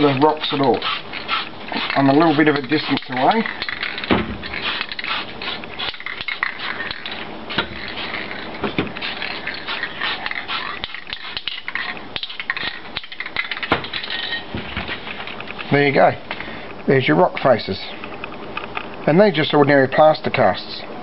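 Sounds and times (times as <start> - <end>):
spray paint can hissing: 0.0 - 14.2
scraping and rubbing: 0.0 - 15.8.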